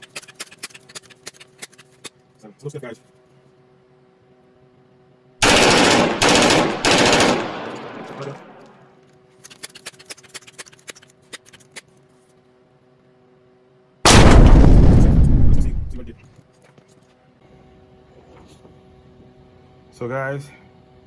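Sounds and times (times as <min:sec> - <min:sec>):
loud ringing bangs: 0:14.1 - 0:16.2.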